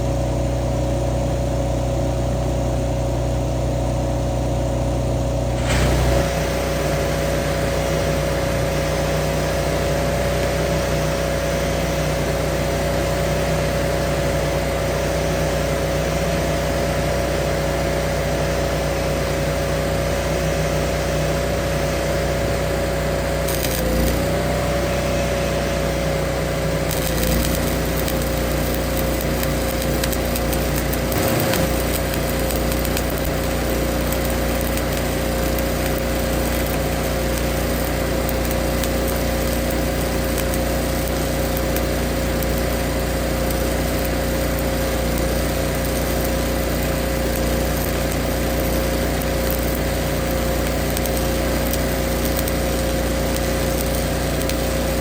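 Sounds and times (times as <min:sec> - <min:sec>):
mulcher engine whining: 0:23.5 - 0:36.0
wood grinding: 0:27.1 - 0:33.4.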